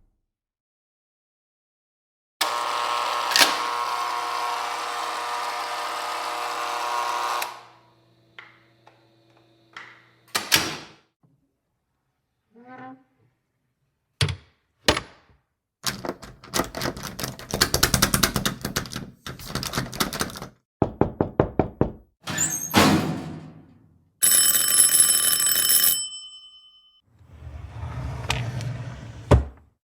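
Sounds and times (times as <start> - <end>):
door creaking: 12.5 - 13.3, 21.9 - 23.6
knocking on a door: 20.8 - 22.1
door slamming: 22.2 - 23.8
electric doorbell ringing: 24.2 - 27.1.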